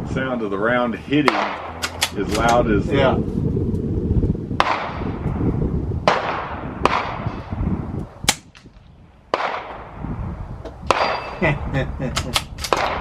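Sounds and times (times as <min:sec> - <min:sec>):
gunshots with echo: 0:01.2 - 0:02.4, 0:04.6 - 0:05.1, 0:06.1 - 0:07.4, 0:09.3 - 0:09.9.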